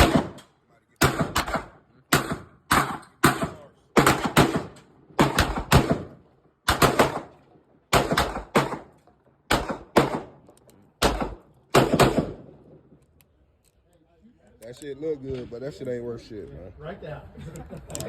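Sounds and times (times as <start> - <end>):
rapid handgun fire: 0.0 - 8.9, 9.5 - 10.4, 11.0 - 12.6.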